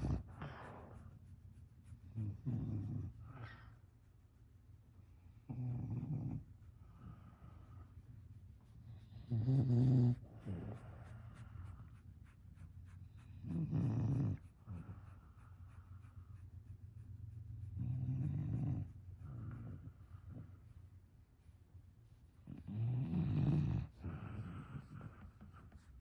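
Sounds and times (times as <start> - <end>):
dog breathing softly: 0.0 - 26.0
dog snoring: 2.2 - 3.6, 5.5 - 7.2, 9.0 - 11.2, 13.2 - 15.1, 17.8 - 20.4, 22.4 - 25.4.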